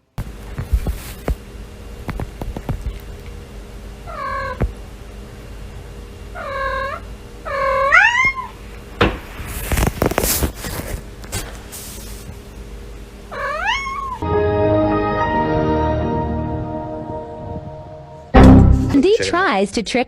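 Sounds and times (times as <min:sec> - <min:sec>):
cat meowing: 0:06.4 - 0:08.6, 0:13.3 - 0:14.2
knocks and rustling: 0:09.0 - 0:11.5.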